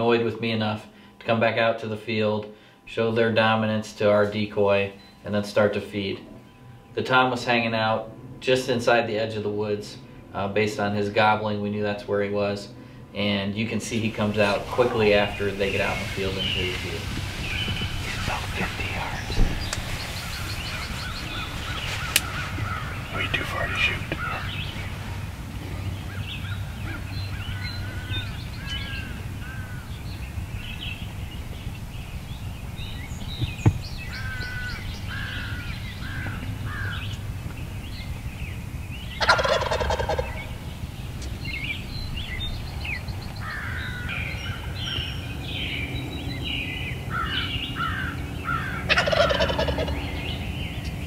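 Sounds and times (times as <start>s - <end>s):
songbirds chirping: 0.0s - 51.0s
turkey gobbling: 14.2s - 29.9s, 39.2s - 40.6s, 47.2s - 50.1s.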